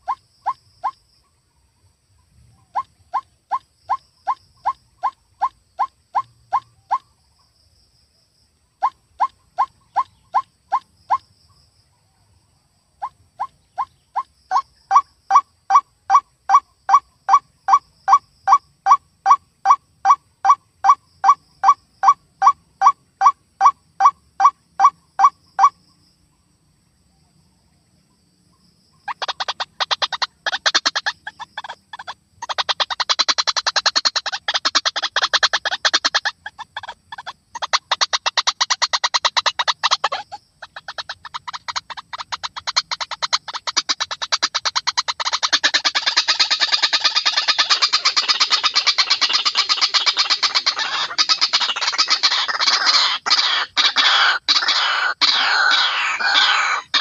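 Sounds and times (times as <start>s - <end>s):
waterhen calling: 2.6s - 7.1s, 8.8s - 11.2s, 29.1s - 57.0s.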